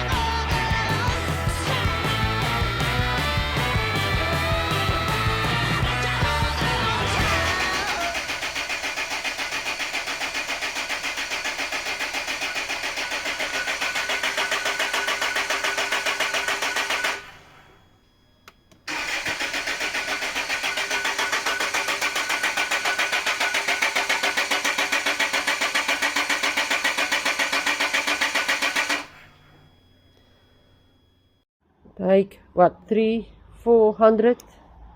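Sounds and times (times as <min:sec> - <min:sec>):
diesel engine cranking: 0:00.8 - 0:17.7, 0:18.9 - 0:29.2.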